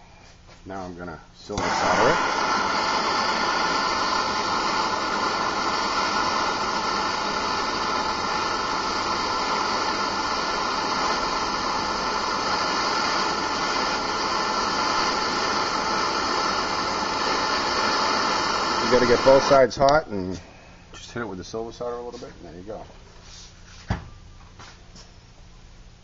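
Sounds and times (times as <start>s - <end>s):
gas torch flame hissing: 1.4s - 20.4s.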